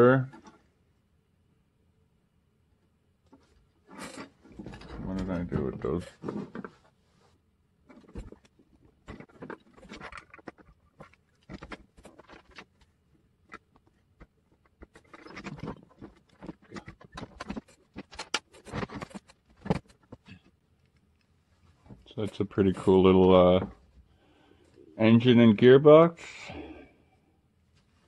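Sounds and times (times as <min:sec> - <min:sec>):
small plastic parts clicking and scraping: 0:07.8 - 0:23.8.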